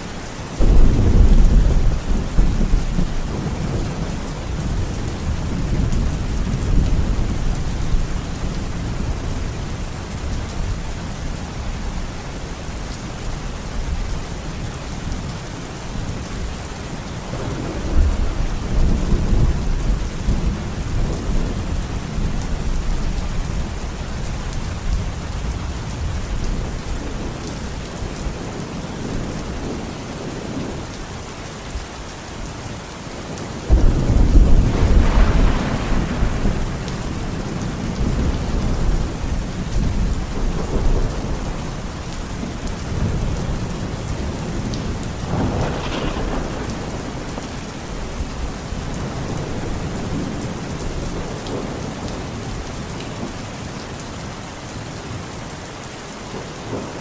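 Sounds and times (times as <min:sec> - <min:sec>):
steady rain: 0:00.0 - 0:57.0
loud thunder clap: 0:00.6 - 0:03.6, 0:33.7 - 0:36.8, 0:45.3 - 0:47.3
thunder rumbling: 0:00.6 - 0:11.3, 0:17.3 - 0:30.9, 0:33.3 - 0:53.3.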